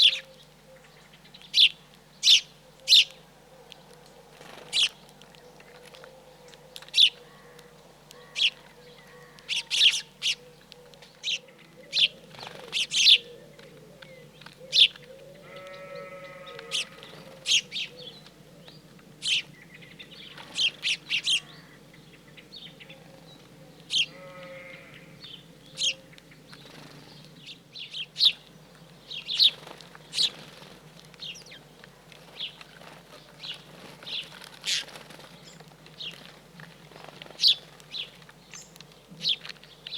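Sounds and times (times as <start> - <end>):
small birds chirping: 0.0 - 39.9
livestock bleating: 15.4 - 17.0, 24.1 - 25.2.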